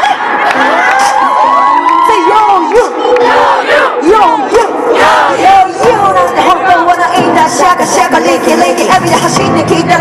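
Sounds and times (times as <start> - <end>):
crowd shouting and singing along: 0.0 - 10.0
live hip-hop music: 3.9 - 10.0.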